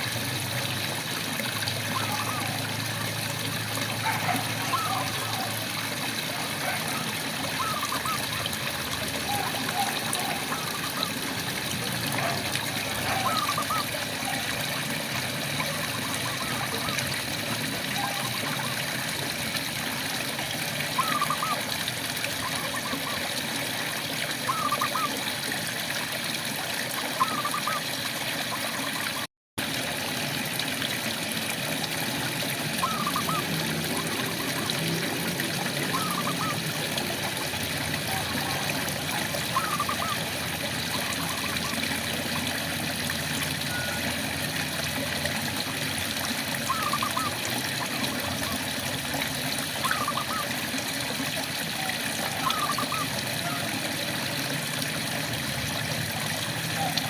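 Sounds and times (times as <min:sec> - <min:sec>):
trickling water: 0:00.0 - 0:57.0
frog calling: 0:01.9 - 0:02.7, 0:04.0 - 0:05.6, 0:06.6 - 0:08.6, 0:09.2 - 0:11.2, 0:12.2 - 0:14.4, 0:21.0 - 0:21.6, 0:24.5 - 0:25.2, 0:27.2 - 0:27.8, 0:32.8 - 0:34.8, 0:35.8 - 0:36.8, 0:38.0 - 0:42.0, 0:46.7 - 0:48.6, 0:49.8 - 0:50.6, 0:51.7 - 0:53.7.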